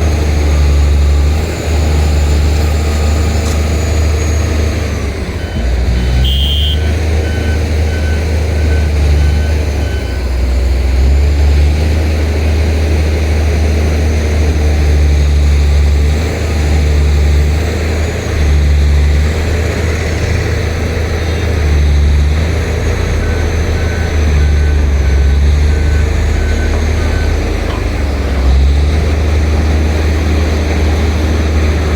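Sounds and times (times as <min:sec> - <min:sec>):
bulldozer diesel engine: 0:00.0 - 0:31.9
reversing alarm beeping: 0:00.1 - 0:10.8, 0:21.3 - 0:31.0.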